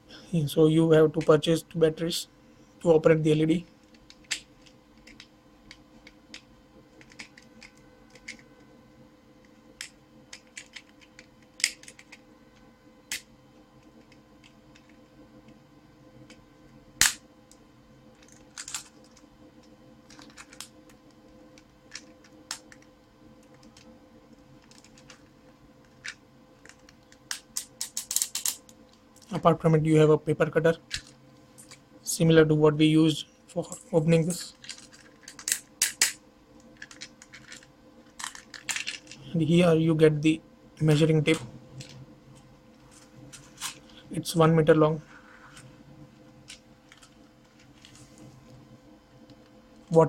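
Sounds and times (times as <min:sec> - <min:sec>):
faint steady hum: 0:00.0 - 0:50.0.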